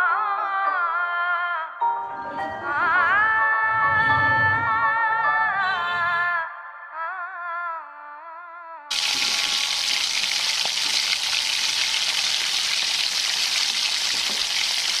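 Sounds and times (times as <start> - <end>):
song: 1.8 - 6.7
steady rain: 8.9 - 15.0.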